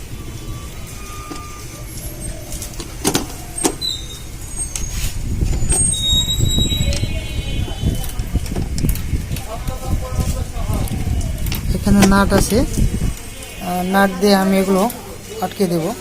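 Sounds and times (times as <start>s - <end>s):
road traffic rumbling: 0.0s - 16.0s
faint high squeals: 0.1s - 8.0s.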